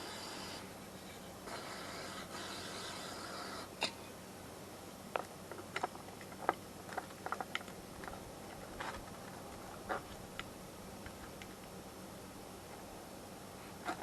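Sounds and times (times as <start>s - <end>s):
rustling and scraping: 5.2s - 11.7s, 13.6s - 14.0s.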